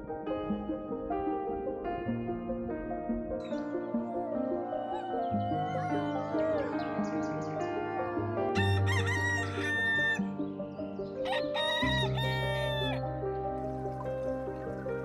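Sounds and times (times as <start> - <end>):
background music: 0.0 - 15.0
rooster crowing: 4.2 - 10.2, 11.3 - 13.0.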